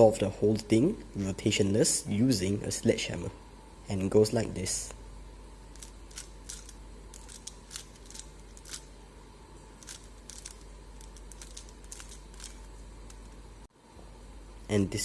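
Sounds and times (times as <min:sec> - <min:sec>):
steady low hum: 0:00.0 - 0:15.0
speed cube clicks: 0:05.8 - 0:08.8, 0:09.8 - 0:13.2.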